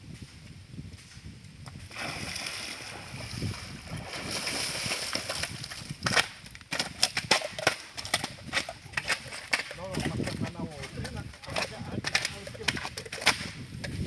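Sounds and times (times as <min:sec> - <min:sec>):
water sloshing and splashing: 0:01.9 - 0:06.4.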